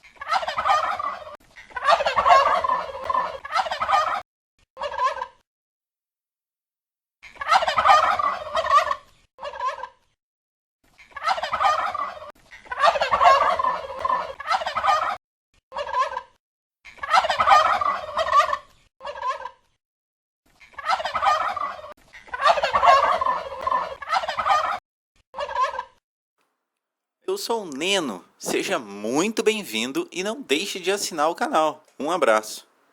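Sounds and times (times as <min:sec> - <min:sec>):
turkey gobbling: 0:00.2 - 0:04.2, 0:07.4 - 0:09.8, 0:11.2 - 0:15.2, 0:17.0 - 0:19.5, 0:20.8 - 0:24.8, 0:25.4 - 0:25.9.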